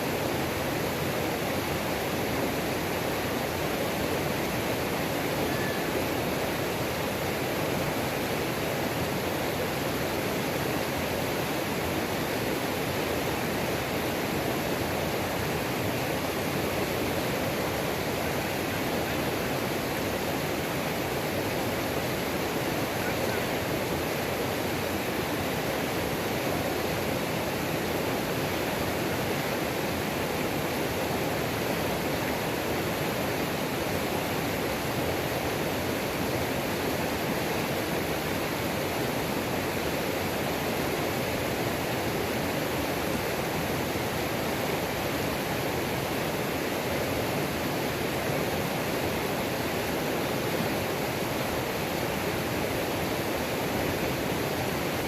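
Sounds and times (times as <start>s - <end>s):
water rushing over rocks: 0.0s - 55.0s.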